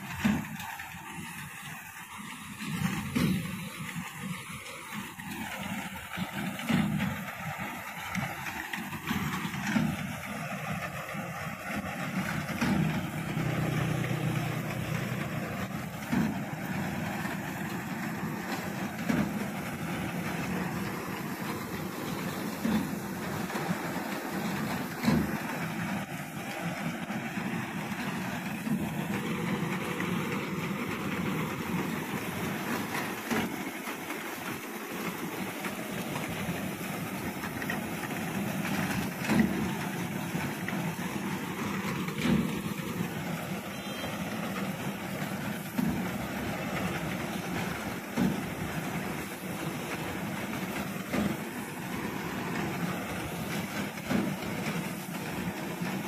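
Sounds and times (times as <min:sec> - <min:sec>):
reaper binder running: 0:07.4 - 0:26.0.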